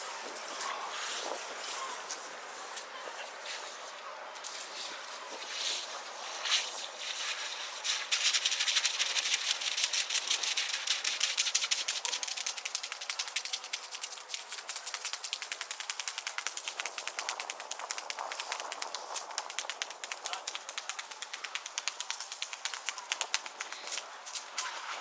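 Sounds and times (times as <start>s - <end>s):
percussion rattle shaken: 7.9s - 24.6s.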